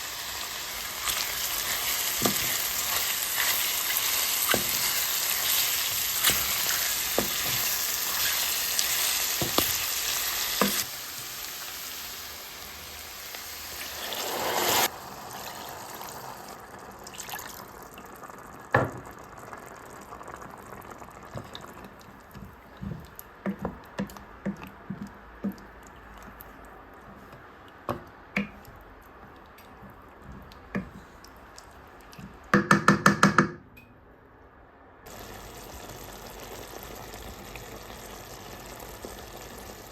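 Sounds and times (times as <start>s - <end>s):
food sizzling in pot: 0.0s - 21.9s, 35.1s - 39.9s.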